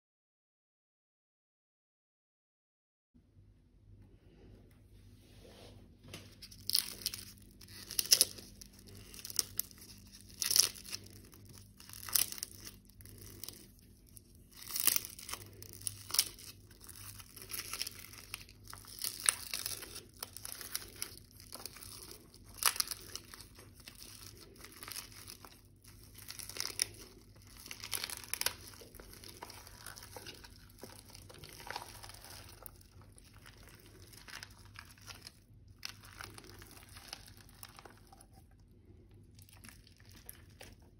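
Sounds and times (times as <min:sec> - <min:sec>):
slime squelching: 0:06.2 - 0:40.9
slime popping: 0:14.4 - 0:38.4.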